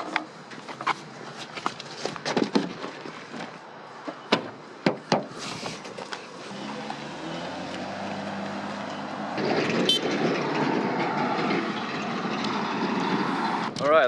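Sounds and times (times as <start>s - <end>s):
car doors and luggage knocking: 4.3s - 5.3s
vehicle engine running: 6.4s - 13.8s.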